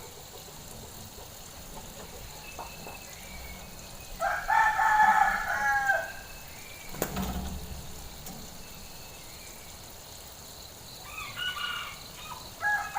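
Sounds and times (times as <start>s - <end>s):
rooster crowing: 3.8s - 6.6s, 11.0s - 12.9s.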